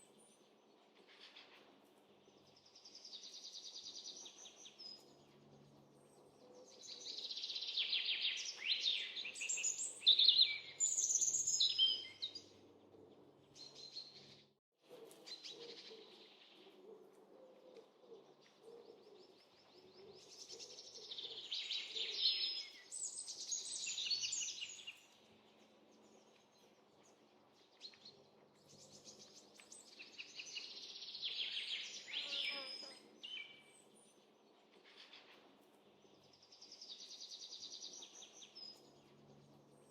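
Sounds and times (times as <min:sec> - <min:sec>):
small birds chirping: 0:00.0 - 0:14.6, 0:17.8 - 0:39.9
faint outdoor background noise: 0:00.0 - 0:39.9.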